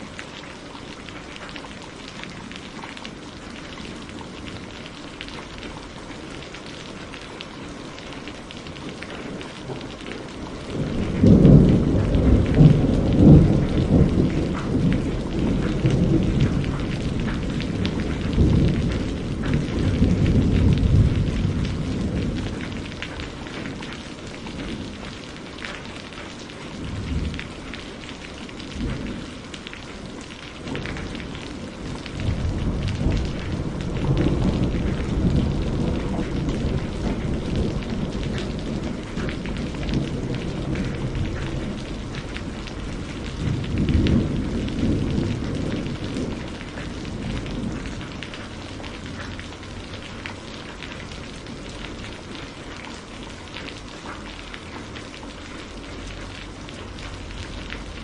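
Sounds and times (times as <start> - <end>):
steady rain: 0.0 - 58.0
rolling thunder: 9.3 - 23.9, 30.6 - 52.2.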